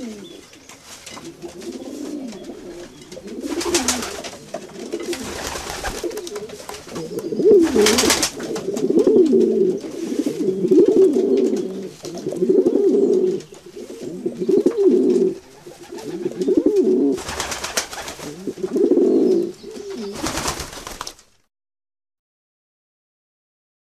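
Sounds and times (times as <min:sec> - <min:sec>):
pigeons cooing: 0:00.0 - 0:20.6.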